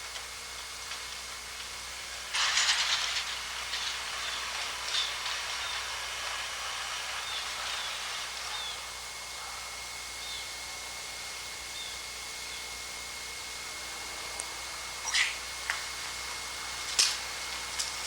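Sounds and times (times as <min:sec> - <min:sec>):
outdoor background hiss: 0:00.0 - 0:18.0
faint bird chirps: 0:15.0 - 0:15.4.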